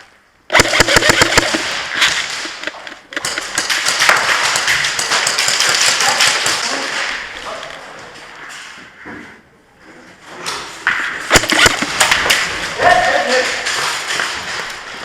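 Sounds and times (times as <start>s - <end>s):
clattery noise: 0.5s - 4.1s, 11.3s - 12.6s
bb impacts: 0.5s - 5.7s
airsoft guns firing: 0.5s - 6.7s, 11.3s - 12.7s.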